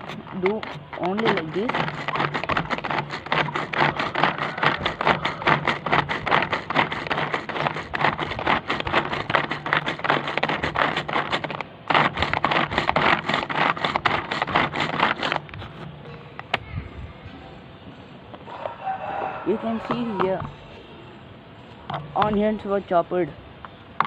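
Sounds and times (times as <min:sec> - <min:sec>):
pull-cord chopper clattering: 0:00.0 - 0:15.4.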